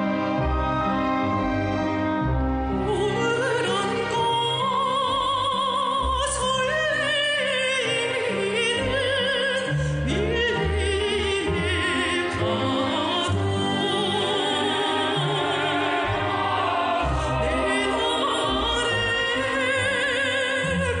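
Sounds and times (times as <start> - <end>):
instrumental backing with bass: 0.0 - 3.2
person singing with vibrato: 2.8 - 21.0.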